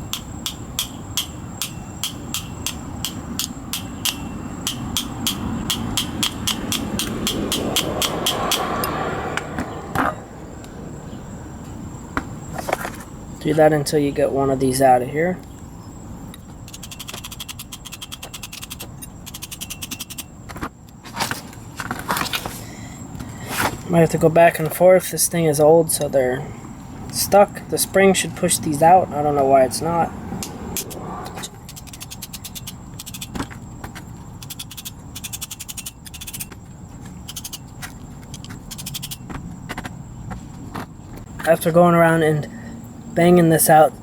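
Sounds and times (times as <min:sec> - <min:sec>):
rapid clicking of hand tool: 0:00.0 - 0:08.4, 0:16.7 - 0:20.3, 0:31.6 - 0:33.5, 0:34.4 - 0:36.6, 0:37.2 - 0:39.3
light metallic clicking and tapping: 0:00.0 - 0:08.6
loud metal knock: 0:00.4 - 0:08.6.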